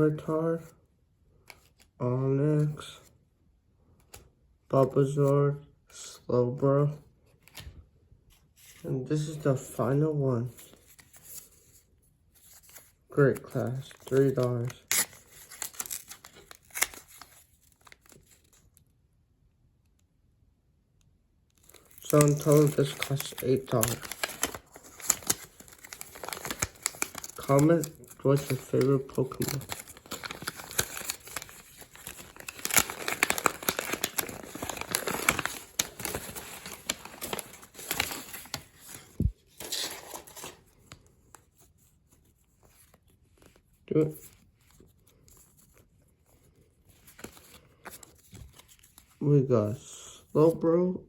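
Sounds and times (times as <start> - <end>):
wrapper crinkling: 13.9 - 18.7, 21.6 - 40.6.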